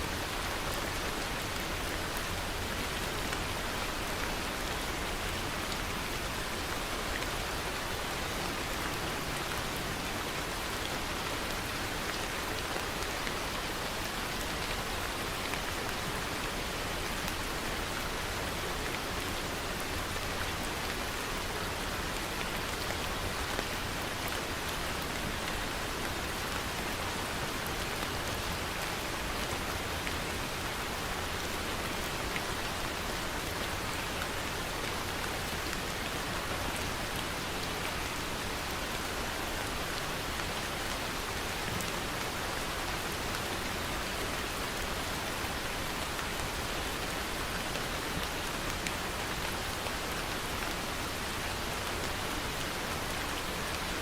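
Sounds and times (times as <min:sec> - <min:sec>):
rain pattering on a surface: 0:00.0 - 0:54.0.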